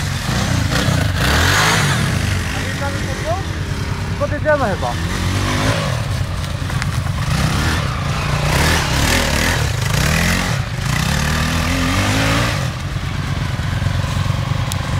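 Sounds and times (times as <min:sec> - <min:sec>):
quad engine revving: 0:00.0 - 0:14.9.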